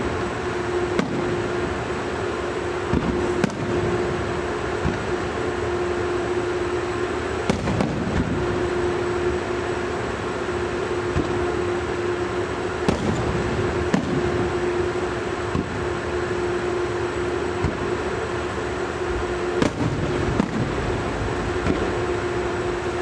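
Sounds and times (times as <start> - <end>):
constant hum: 0.0 - 23.0
steady rumble: 0.0 - 23.0
fireworks bangs: 0.9 - 1.7, 2.9 - 5.2, 7.4 - 8.9, 12.8 - 16.5, 17.5 - 18.0, 19.5 - 22.4.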